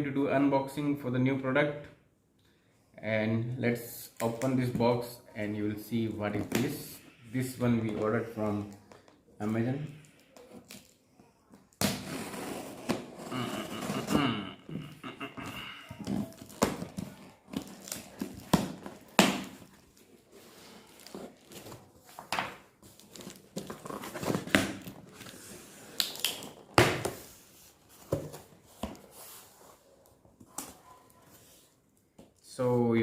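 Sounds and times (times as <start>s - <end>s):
packaging crinkling and tearing: 16.0s - 22.1s, 22.8s - 26.7s.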